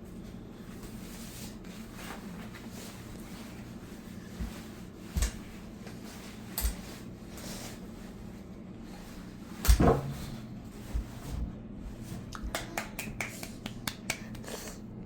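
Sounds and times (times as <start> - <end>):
knocks and thumps: 9.7 - 10.4.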